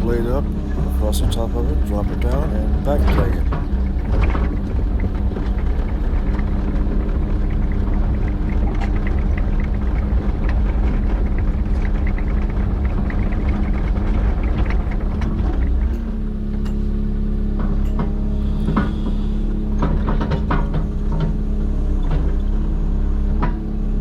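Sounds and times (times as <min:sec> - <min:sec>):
diesel engine idling: 0:00.0 - 0:16.0
dirt rattling and scraping: 0:00.0 - 0:16.5
heavy hydraulic rumble: 0:00.0 - 0:24.0.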